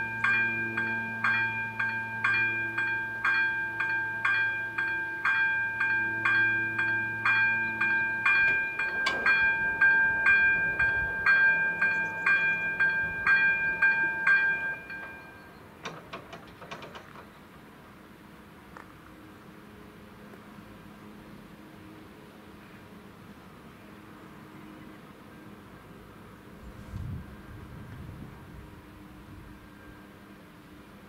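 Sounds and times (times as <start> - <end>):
bell ringing: 0.0 - 15.6.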